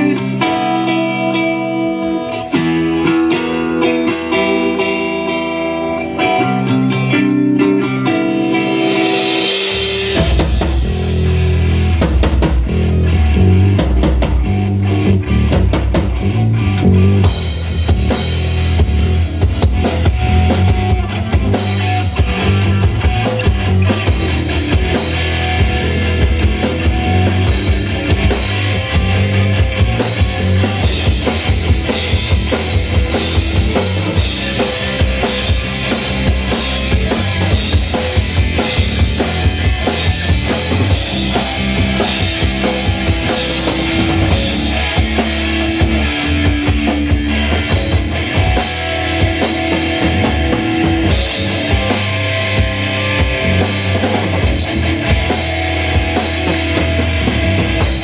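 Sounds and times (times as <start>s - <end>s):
rock band playing loudly: 0.0s - 58.0s
drum kit beat: 8.4s - 16.4s, 17.1s - 58.0s.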